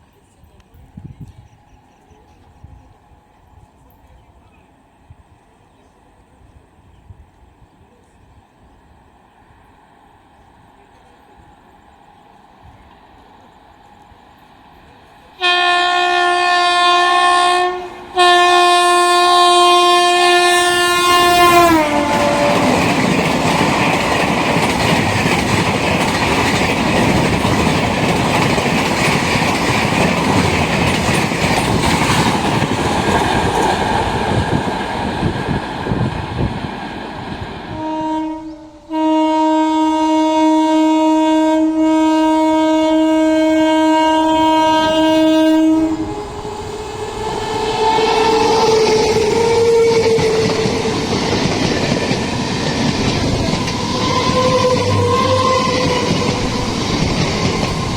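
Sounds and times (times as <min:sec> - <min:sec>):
train rumbling past on rails: 0:00.0 - 0:57.9
locomotive horn blasts: 0:15.4 - 0:22.9, 0:37.7 - 0:50.4, 0:53.7 - 0:56.7.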